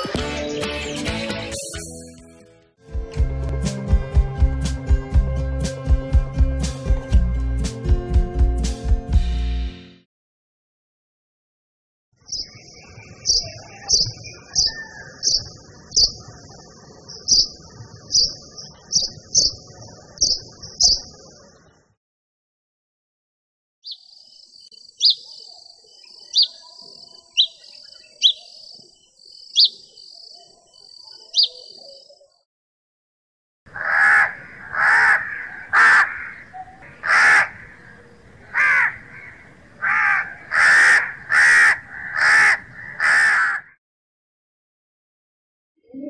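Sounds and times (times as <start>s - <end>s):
small bird chirping: 12.2s - 21.7s, 23.8s - 32.4s
crow cawing: 33.7s - 43.8s.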